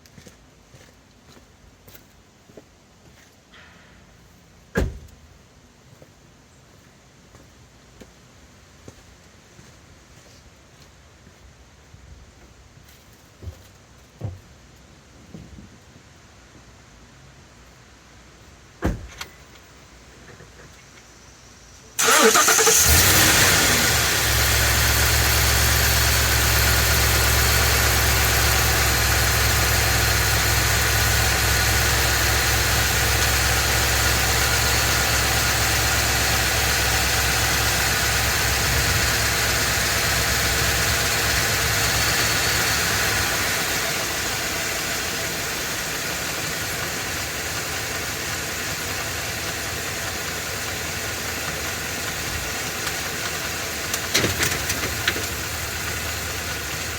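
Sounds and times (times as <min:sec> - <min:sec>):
engine running: 0:22.0 - 0:56.9.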